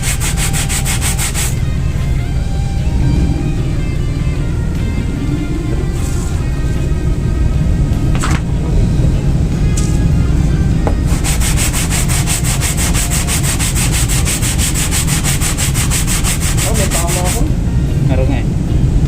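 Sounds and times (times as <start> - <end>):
brake pad rasping on sandpaper: 0.0 - 1.6, 11.1 - 17.4.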